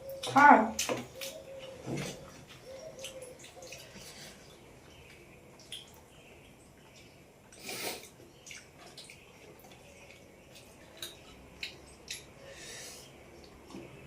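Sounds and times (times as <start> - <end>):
wet mouth eating sounds: 7.5 - 12.8.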